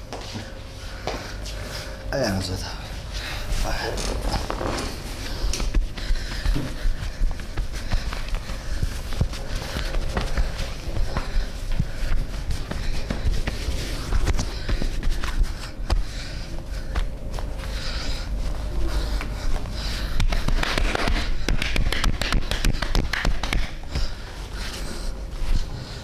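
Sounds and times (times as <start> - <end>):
hands slapping on skin: 20.2 - 23.8.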